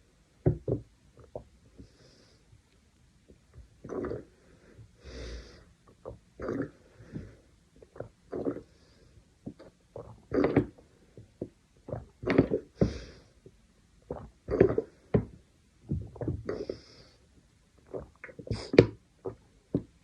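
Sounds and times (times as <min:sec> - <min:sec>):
person breathing: 0:01.8 - 0:02.5, 0:04.4 - 0:05.7, 0:12.7 - 0:13.4, 0:16.5 - 0:17.3
person gulping water: 0:03.3 - 0:04.4, 0:05.8 - 0:08.7, 0:09.4 - 0:13.1, 0:14.0 - 0:16.8, 0:17.8 - 0:19.9.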